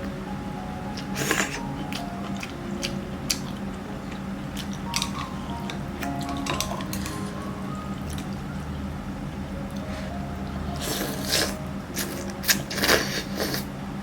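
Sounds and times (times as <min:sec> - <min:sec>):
wet chewing: 0:01.0 - 0:08.6, 0:09.7 - 0:13.7
noodle slurping: 0:10.8 - 0:13.7.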